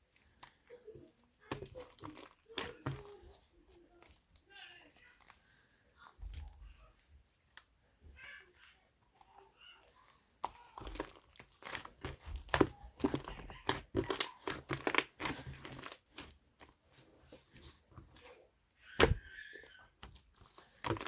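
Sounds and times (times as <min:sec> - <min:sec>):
slime crackling and popping: 0:00.0 - 0:05.6, 0:09.6 - 0:16.7.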